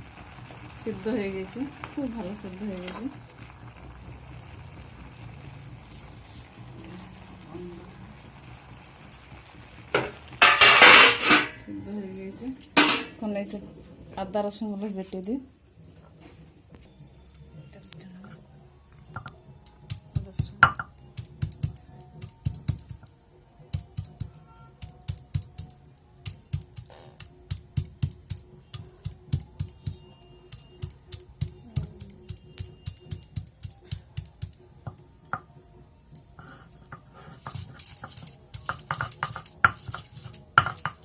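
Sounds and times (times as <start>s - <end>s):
clatter and scraping: 10.0s - 11.6s, 37.3s - 41.0s
stone knocking grinding garlic: 19.2s - 23.1s, 23.7s - 35.6s, 36.4s - 41.0s.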